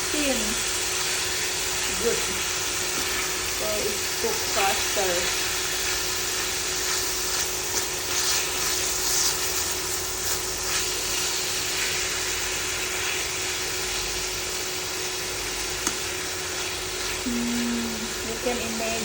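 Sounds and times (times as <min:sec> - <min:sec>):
chicken sizzling in hot oil: 0:00.0 - 0:19.0
faint steady hum: 0:15.8 - 0:19.0.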